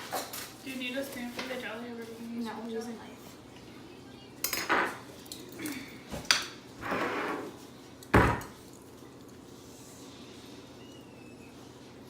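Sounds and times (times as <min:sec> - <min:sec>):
heavy knock on countertop: 0:08.1 - 0:08.5.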